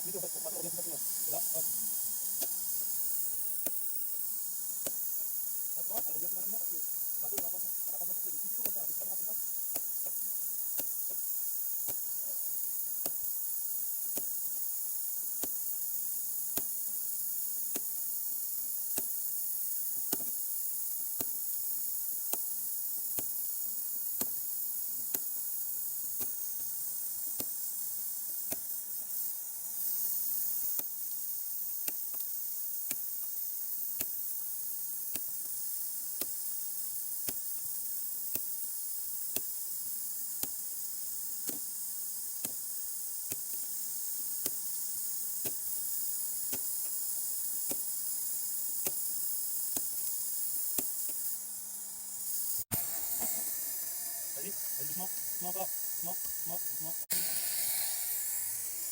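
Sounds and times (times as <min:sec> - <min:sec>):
steady hiss: 0:00.0 - 0:58.9.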